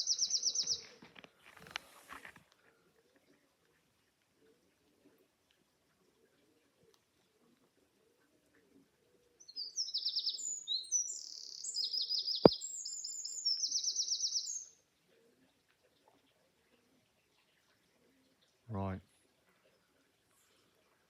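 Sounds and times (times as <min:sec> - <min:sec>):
songbird trilling song: 0:00.0 - 0:00.9, 0:09.4 - 0:14.8.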